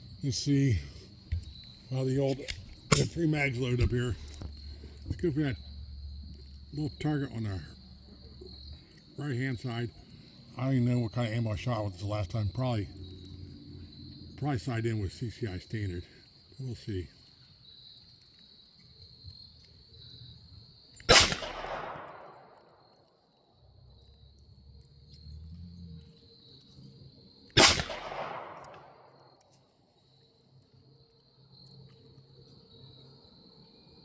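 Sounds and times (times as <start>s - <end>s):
crickets chirring: 0.0s - 34.0s
pistol shots echoing: 21.1s - 22.6s, 27.6s - 29.2s.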